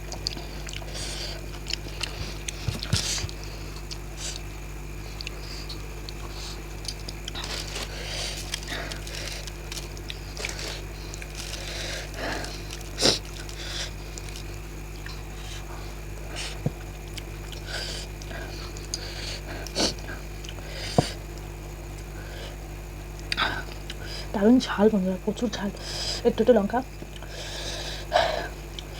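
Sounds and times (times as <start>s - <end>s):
wet chewing and smacking: 0.0s - 22.1s, 27.0s - 27.6s.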